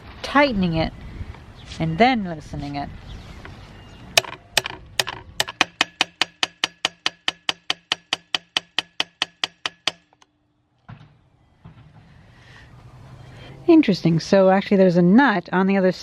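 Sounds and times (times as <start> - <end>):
hammer tapping on metal: 4.2 - 10.2.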